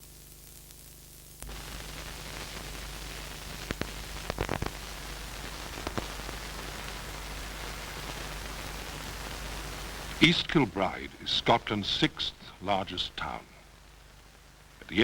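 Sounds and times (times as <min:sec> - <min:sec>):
tape static hiss: 0:00.0 - 0:15.0.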